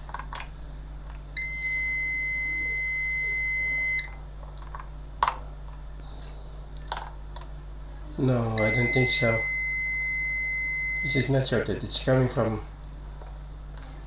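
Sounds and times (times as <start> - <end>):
multimeter continuity beep: 1.4 - 4.2, 8.5 - 11.7.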